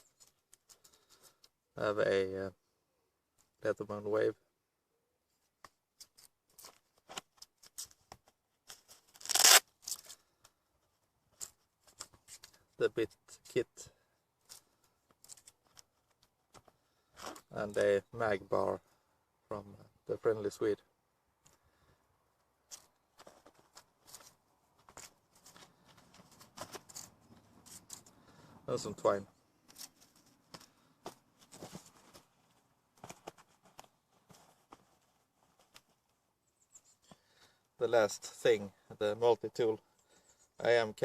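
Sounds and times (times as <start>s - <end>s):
pouch tearing rasp: 8.6s - 10.3s
light clicks and rustles: 14.4s - 17.9s, 21.4s - 28.4s, 29.6s - 36.2s.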